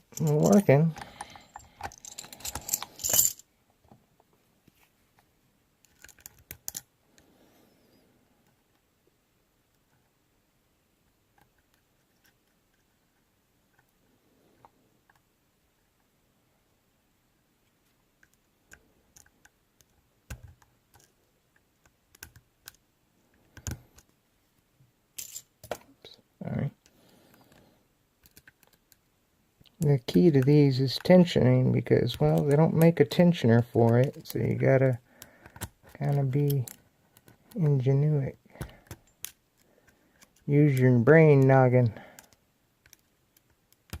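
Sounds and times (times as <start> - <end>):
key and padlock clinking: 0.1 - 3.4.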